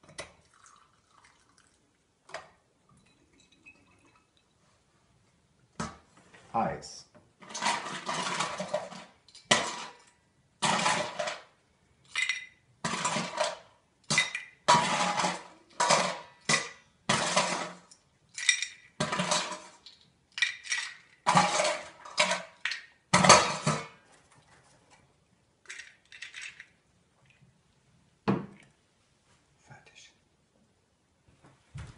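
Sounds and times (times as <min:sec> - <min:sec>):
ice cubes rattling in machine: 0:07.4 - 0:11.5, 0:12.1 - 0:23.9, 0:25.6 - 0:26.8.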